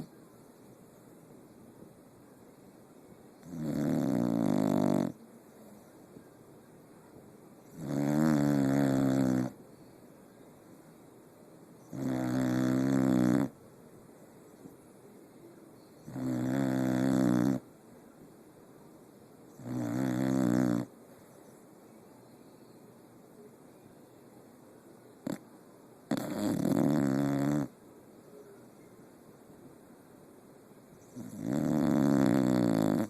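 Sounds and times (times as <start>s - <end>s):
loud snoring: 3.4s - 5.2s, 7.7s - 9.6s, 11.9s - 13.6s, 16.1s - 17.6s, 19.6s - 20.9s, 26.1s - 27.7s, 31.2s - 33.0s.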